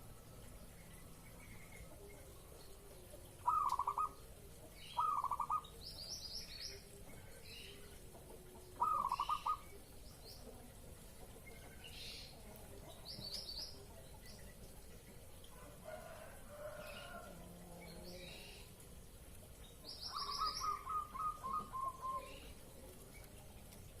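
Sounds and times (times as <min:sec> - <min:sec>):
small birds chirping: 0:00.0 - 0:24.0
dove cooing: 0:03.4 - 0:04.3, 0:04.9 - 0:05.8, 0:08.2 - 0:09.8, 0:20.1 - 0:22.6.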